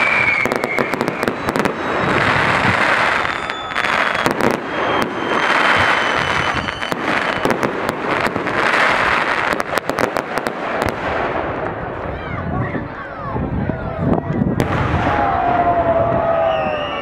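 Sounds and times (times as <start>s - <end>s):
firework whistle: 0.0s - 7.7s, 16.2s - 17.0s
fireworks sharp cracks: 0.0s - 12.1s, 14.6s - 15.5s
fireworks crackling: 0.0s - 12.3s.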